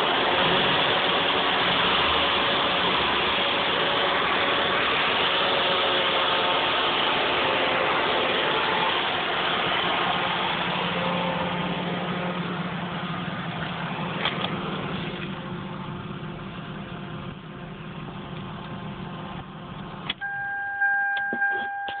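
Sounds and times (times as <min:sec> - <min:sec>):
loud hissing leak: 0:00.0 - 0:11.7
car engine running: 0:00.0 - 0:20.2
high electronic tone: 0:20.2 - 0:22.0.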